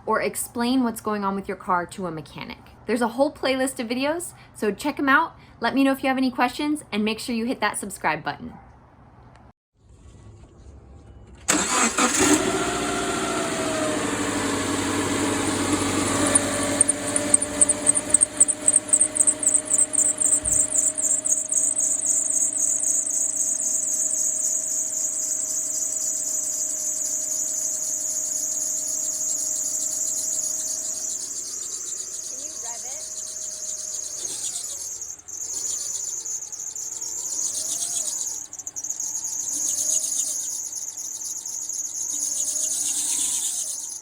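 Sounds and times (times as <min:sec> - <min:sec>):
car engine starting and idling: 0:11.4 - 0:42.0
loose belts chirping and squealing: 0:11.5 - 0:44.0.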